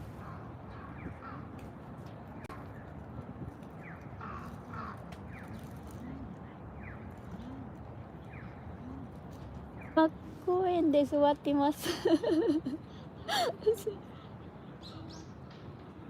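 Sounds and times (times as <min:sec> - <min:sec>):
small birds chirping: 0:03.8 - 0:10.3
crows cawing: 0:04.2 - 0:05.1.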